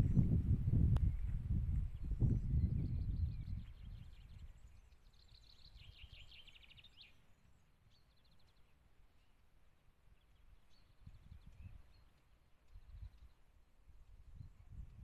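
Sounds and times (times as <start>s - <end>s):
low rumble: 0.0s - 3.3s
songbird trilling: 2.0s - 7.2s.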